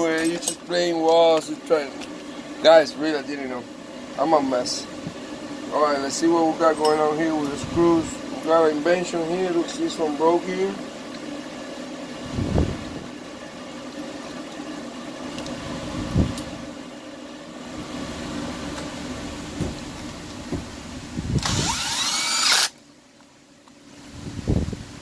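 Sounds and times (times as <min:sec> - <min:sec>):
tools and metal parts knocking: 0:00.0 - 0:02.2
mechanical hum: 0:00.0 - 0:25.0.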